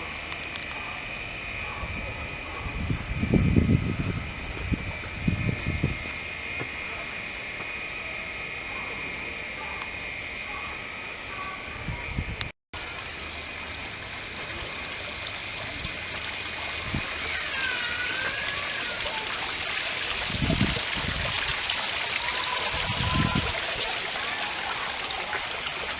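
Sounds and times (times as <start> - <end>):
water trickling and splashing: 12.8 - 25.9.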